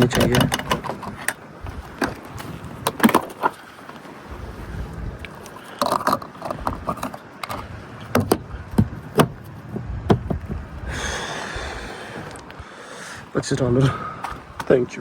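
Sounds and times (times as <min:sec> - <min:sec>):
fuel nozzle clicks and knocks: 0:00.0 - 0:01.4, 0:05.8 - 0:10.7.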